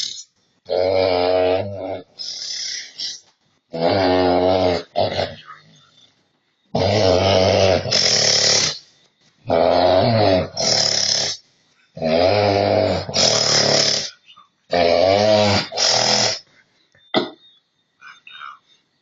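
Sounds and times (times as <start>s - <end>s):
loud rattling snoring: 0.0s - 5.6s, 6.7s - 8.9s, 9.5s - 11.4s, 12.0s - 16.5s
hissing breath: 2.2s - 3.3s.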